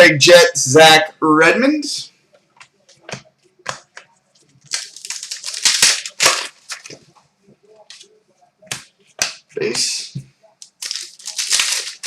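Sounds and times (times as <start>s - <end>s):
trading cards crinkling: 2.9s - 7.1s, 10.6s - 12.0s.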